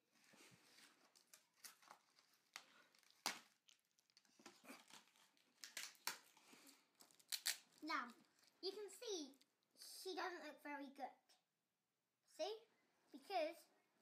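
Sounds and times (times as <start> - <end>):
plastic and cardboard tearing: 1.2 - 6.4, 7.0 - 8.5.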